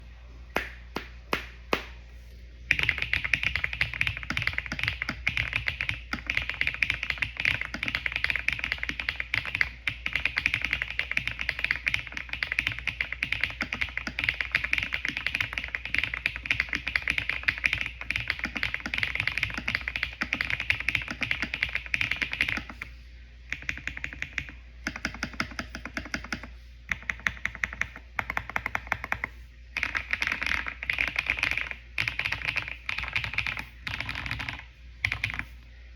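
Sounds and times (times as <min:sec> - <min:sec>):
mechanical keyboard typing: 0:02.7 - 0:22.9, 0:23.5 - 0:35.5.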